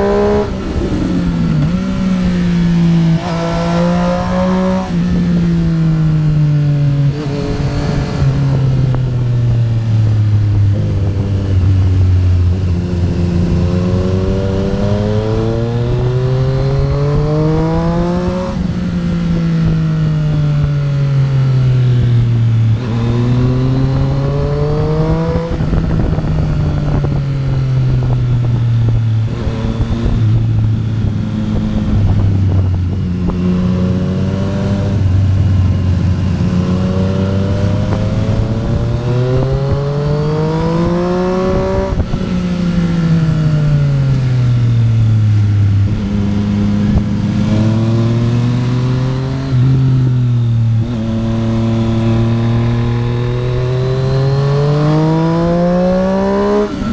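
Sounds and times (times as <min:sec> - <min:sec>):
motorcycle engine accelerating: 0:00.0 - 0:56.9.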